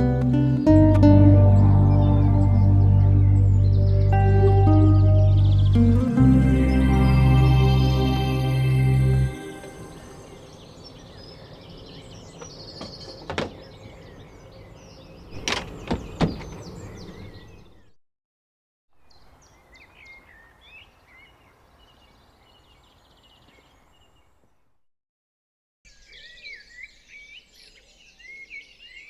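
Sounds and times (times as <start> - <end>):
small birds chirping: 0.0 - 17.8, 25.9 - 29.0.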